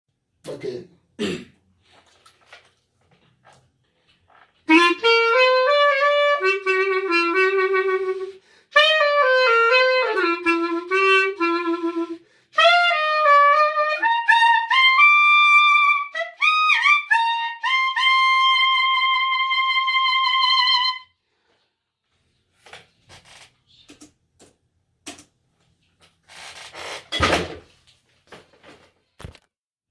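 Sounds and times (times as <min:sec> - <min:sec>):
solo wind instrument melody: 0:04.7 - 0:21.1.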